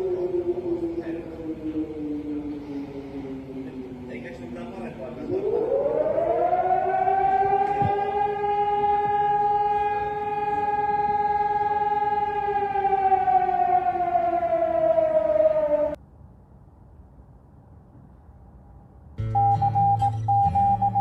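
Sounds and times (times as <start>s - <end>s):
two-tone emergency siren: 0.0s - 16.0s.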